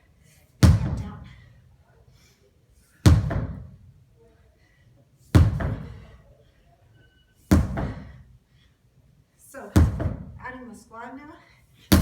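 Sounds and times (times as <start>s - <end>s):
sledgehammer thudding on tire: 0.6s - 1.1s, 3.1s - 3.8s, 5.4s - 6.0s, 7.5s - 8.2s, 9.8s - 10.4s.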